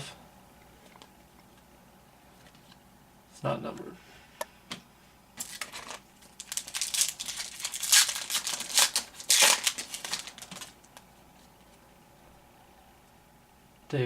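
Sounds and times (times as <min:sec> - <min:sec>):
wrapper crinkling and tearing: 0:05.4 - 0:11.0.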